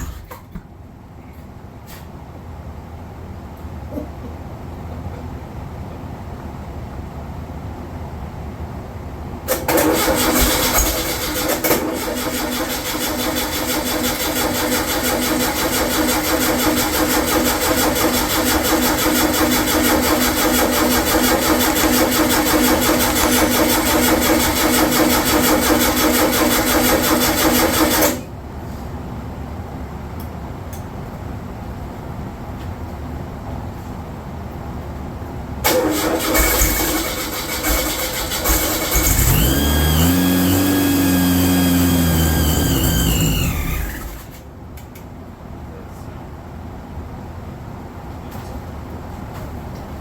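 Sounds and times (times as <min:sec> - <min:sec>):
starter motor cranking engine: 0:09.5 - 0:28.2, 0:35.6 - 0:44.4.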